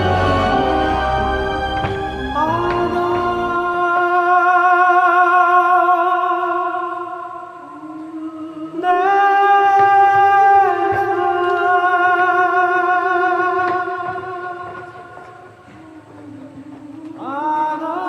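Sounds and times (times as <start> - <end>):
dramatic music with sustained vocals: 0.0 - 18.0.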